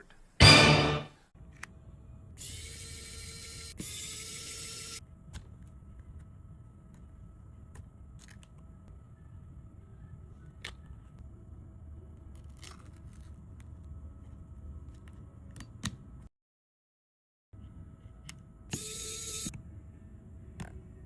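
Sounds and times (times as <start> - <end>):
low steady hum: 5.0 - 16.3.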